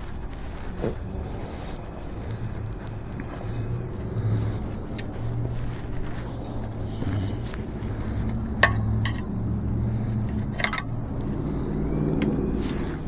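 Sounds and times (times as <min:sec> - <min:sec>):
steady low hum: 0:00.0 - 0:13.0
metallic clicks and knocks: 0:08.1 - 0:11.5.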